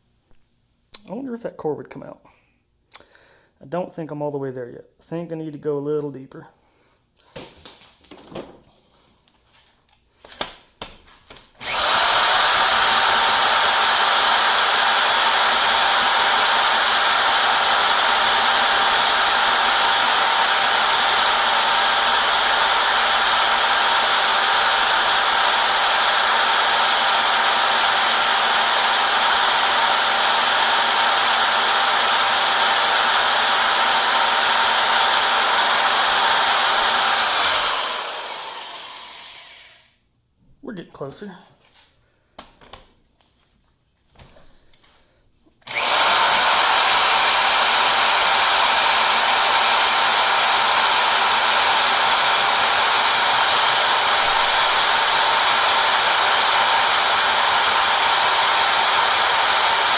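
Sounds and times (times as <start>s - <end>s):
drill boring into metal: 11.6s - 39.9s, 45.6s - 59.9s.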